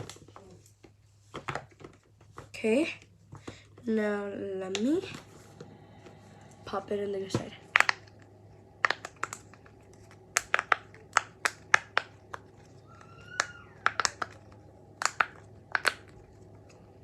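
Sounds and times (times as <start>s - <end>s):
fidget toy bubbles popping: 13.2s - 16.2s.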